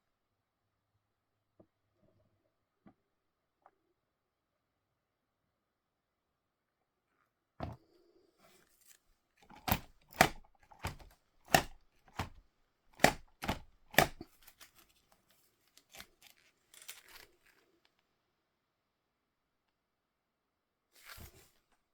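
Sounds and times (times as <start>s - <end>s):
packaging rustling: 13.0s - 17.7s.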